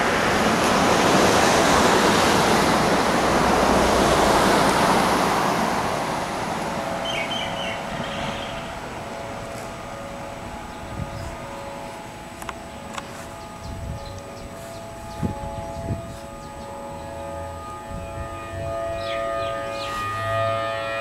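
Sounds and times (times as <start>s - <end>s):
aircraft roaring overhead: 0.0s - 21.0s.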